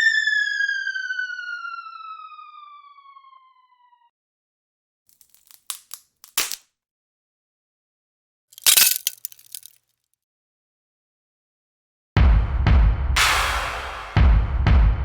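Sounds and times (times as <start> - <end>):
falling electronic tone: 0.0 - 4.1
sharp cracks and clinks: 5.1 - 6.6, 8.6 - 9.8
shattering crash: 8.6 - 9.7
small tinkling hits: 8.6 - 9.7.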